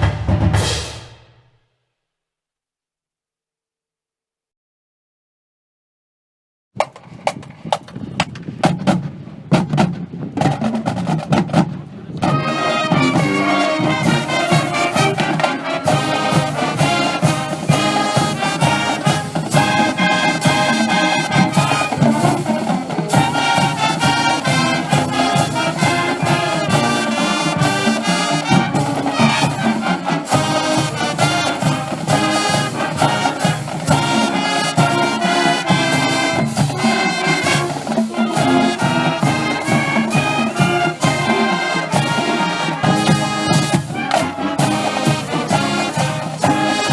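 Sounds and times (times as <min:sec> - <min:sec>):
brass band music: 0:00.0 - 0:01.6, 0:12.2 - 0:46.9
sharp drum hits: 0:00.0 - 0:01.6.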